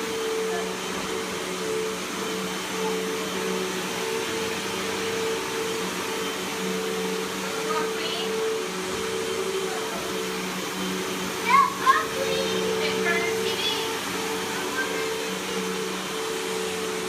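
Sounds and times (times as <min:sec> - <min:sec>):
vacuum cleaner running: 0:00.0 - 0:17.0.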